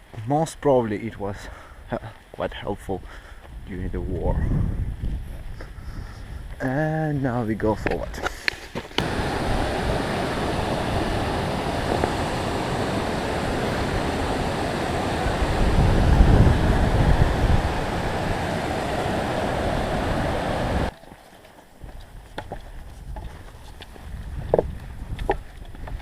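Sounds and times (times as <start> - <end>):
deep rumbling swell: 9.0 - 20.9
rushing white water: 9.0 - 21.0.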